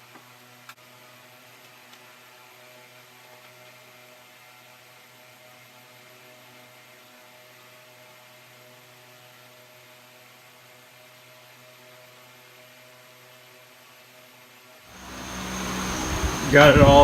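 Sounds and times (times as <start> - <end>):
light hiss: 14.9 - 17.0.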